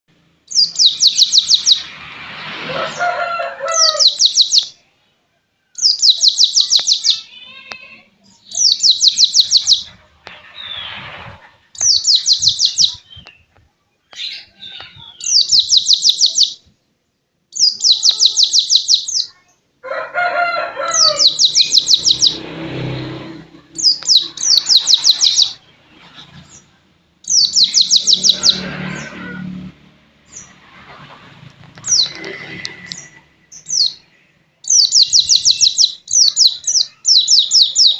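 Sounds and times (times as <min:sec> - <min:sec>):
fainter lower bird calls: 0:00.5 - 0:02.0, 0:02.7 - 0:04.9, 0:05.6 - 0:16.7, 0:17.5 - 0:19.6, 0:20.8 - 0:22.5, 0:23.8 - 0:29.4, 0:31.8 - 0:37.9
bird high pulsed song bursts: 0:21.1 - 0:22.4.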